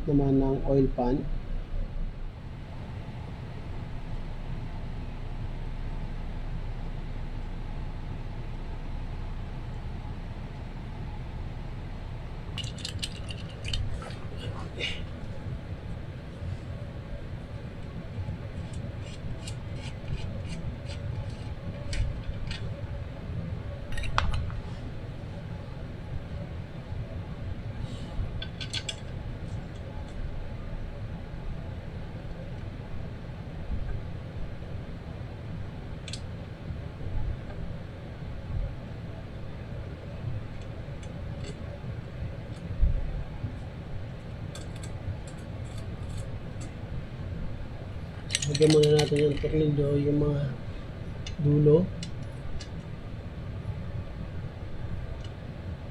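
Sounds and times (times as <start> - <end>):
low background rumble: 0.0 - 55.9
light clicks of metal parts: 12.5 - 16.0, 17.8 - 22.9, 23.9 - 24.7, 27.8 - 30.2, 36.0 - 36.4, 40.5 - 42.8, 43.5 - 46.8, 48.0 - 50.2, 51.2 - 52.9
metallic clicks of bolts: 12.6 - 13.8, 28.4 - 29.1, 48.3 - 49.5.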